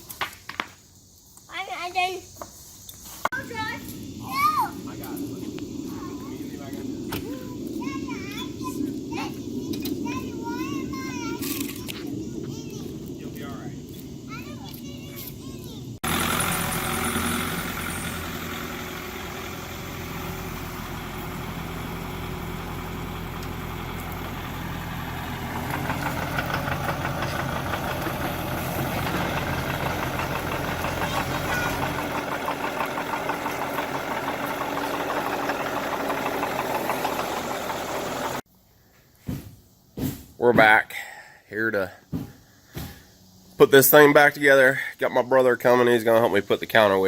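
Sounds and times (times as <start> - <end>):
engine running: 16.0 - 38.4.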